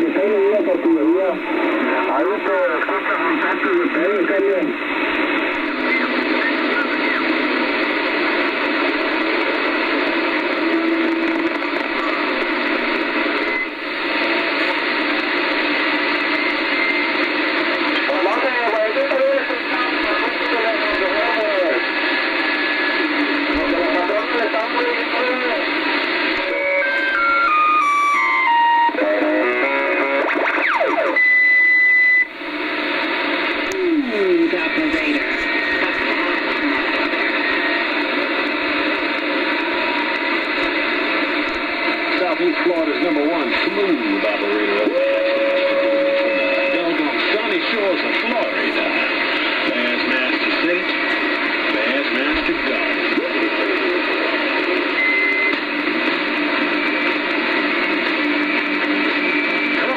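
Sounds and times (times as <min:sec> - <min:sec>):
radio static hiss: 0:00.0 - 0:59.9
radio whistles sliding in pitch: 0:26.5 - 0:28.9.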